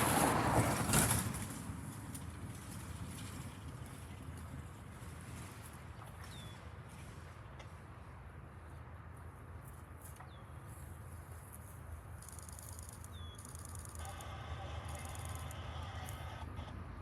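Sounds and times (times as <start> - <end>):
approaching train rushing: 0.0 - 1.8
bird chirps: 12.3 - 14.0
high buzzing calls: 12.8 - 16.6.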